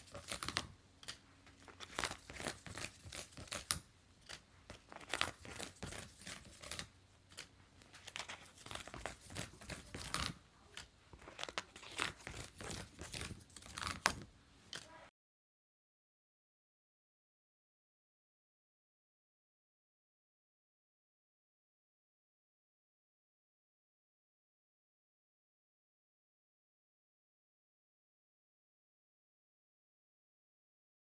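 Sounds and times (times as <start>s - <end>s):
paper tearing and crinkling: 0.0s - 0.7s, 1.7s - 3.8s, 4.7s - 10.4s, 11.2s - 14.2s.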